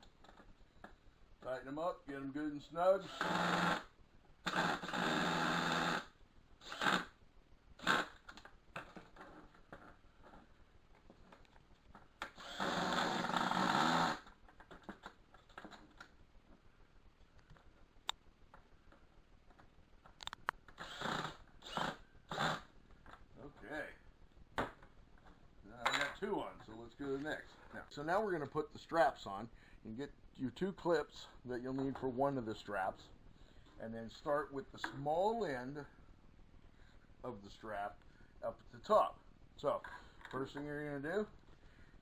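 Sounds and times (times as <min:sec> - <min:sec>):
cordless screw gun: 0:03.0 - 0:07.2, 0:07.8 - 0:08.2, 0:12.2 - 0:14.3, 0:20.8 - 0:22.7.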